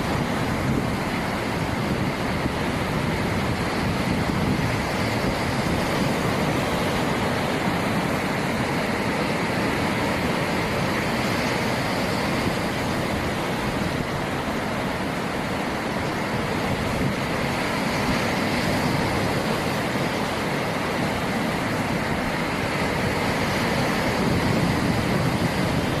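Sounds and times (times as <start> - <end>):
ocean waves breaking: 0.0 - 26.0.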